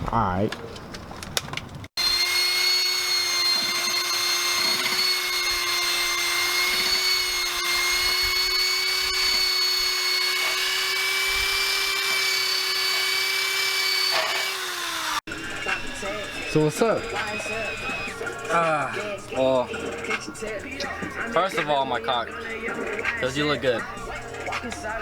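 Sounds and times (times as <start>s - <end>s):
rotary power tool whining: 1.9s - 19.2s.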